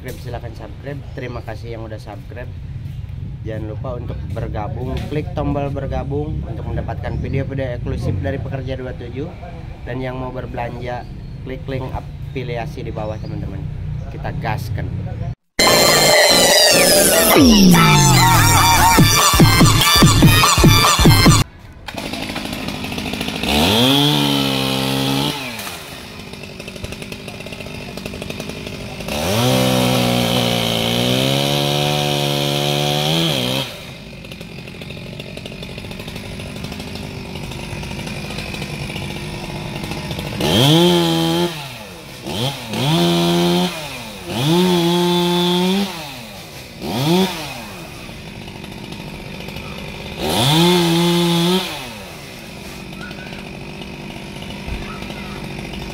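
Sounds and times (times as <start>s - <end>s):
chainsaw engine idling and revving: 0.0s - 14.4s, 15.5s - 55.9s.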